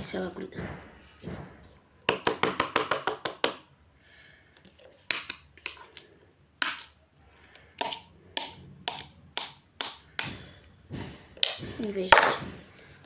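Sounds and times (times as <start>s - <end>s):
slime slapping on hard floor: 1.3s - 3.7s.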